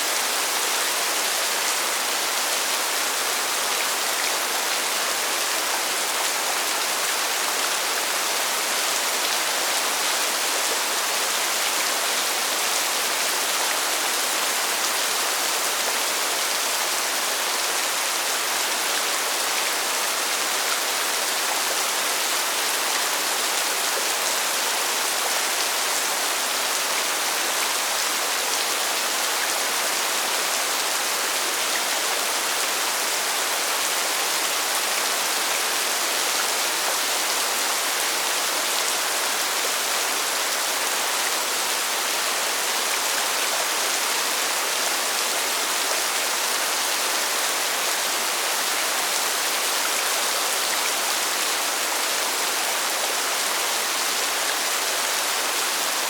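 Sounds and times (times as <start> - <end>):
steady rainfall: 0.0 - 56.0.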